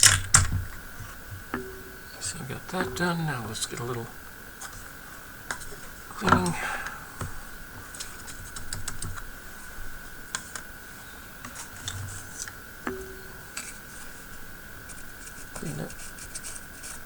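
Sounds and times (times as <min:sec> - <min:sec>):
small tools clicking and scratching: 0:00.0 - 0:01.2
faint high-pitched whine: 0:00.0 - 0:17.0.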